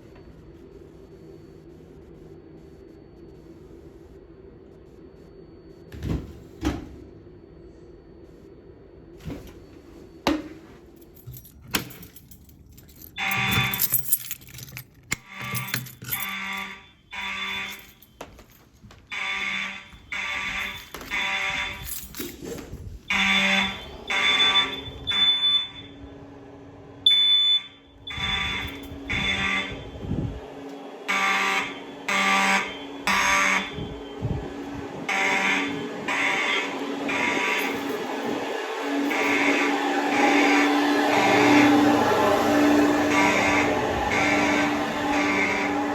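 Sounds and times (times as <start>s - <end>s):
fire alarm horns blasting: 11.2s - 22.3s, 23.0s - 45.9s.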